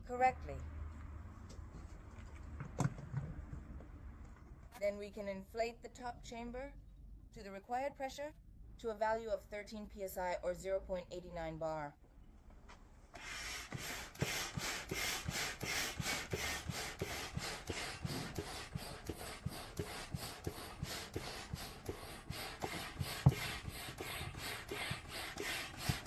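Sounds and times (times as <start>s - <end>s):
air pump strokes: 13.2s - 26.0s.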